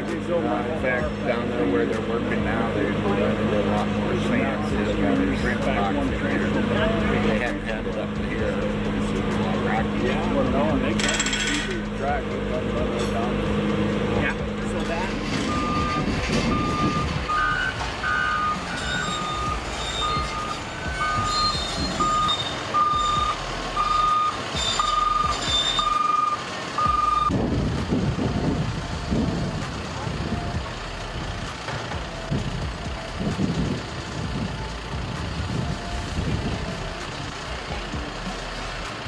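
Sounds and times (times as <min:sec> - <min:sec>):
machinery rumbling: 0:00.0 - 0:39.0
reversing alarm beeping: 0:14.8 - 0:27.4.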